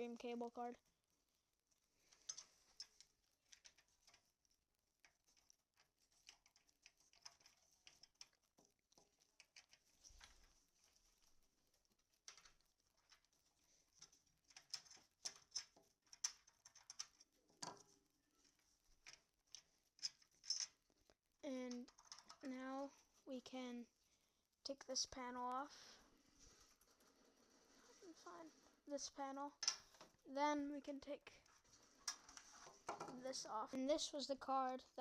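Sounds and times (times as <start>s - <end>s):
clicks and scrapes on plastic and metal: 5.0s - 11.3s, 12.0s - 22.5s, 31.3s - 33.4s.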